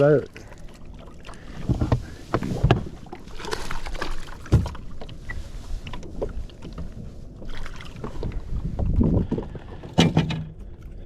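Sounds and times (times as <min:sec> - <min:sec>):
water splashing: 0:00.0 - 0:08.6.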